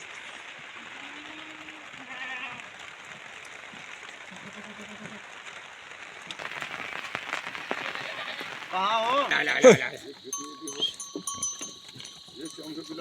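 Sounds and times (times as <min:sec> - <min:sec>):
steady hiss: 0:00.0 - 0:13.0
goats bleating: 0:00.8 - 0:02.8, 0:04.3 - 0:05.4, 0:06.4 - 0:13.0.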